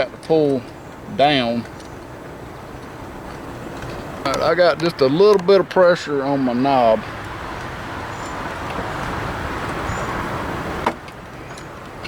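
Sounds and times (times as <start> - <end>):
steady rushing noise: 1.1 - 12.0.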